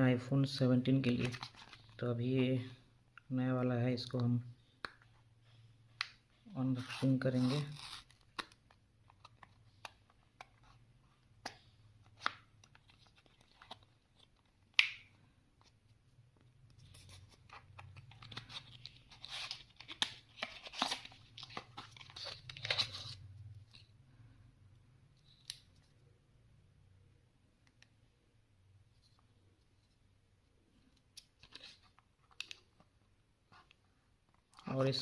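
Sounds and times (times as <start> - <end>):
paper tearing and rustling: 6.8 - 8.2.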